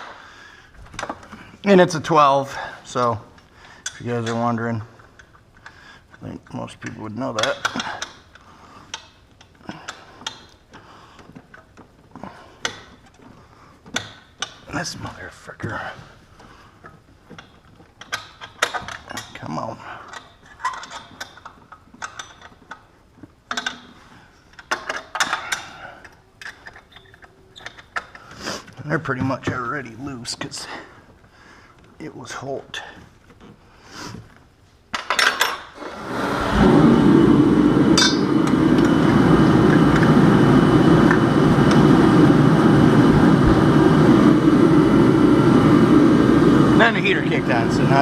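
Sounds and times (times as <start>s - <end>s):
heater blower running: 35.8s - 48.0s
metal clinking and scraping: 38.0s - 38.6s.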